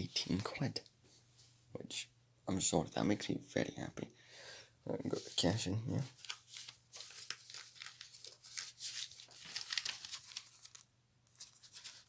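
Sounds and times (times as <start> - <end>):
paper rustling and crinkling: 5.1 - 12.0.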